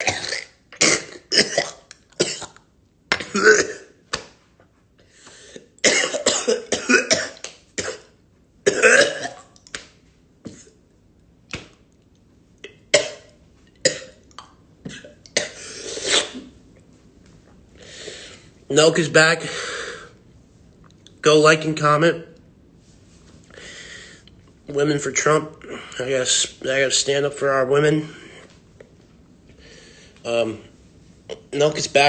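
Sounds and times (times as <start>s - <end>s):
man clearing throat: 0.0s - 3.9s, 5.8s - 8.1s, 8.7s - 9.4s
man coughing hard: 0.0s - 4.0s, 5.6s - 9.4s, 12.9s - 14.2s, 14.9s - 16.4s.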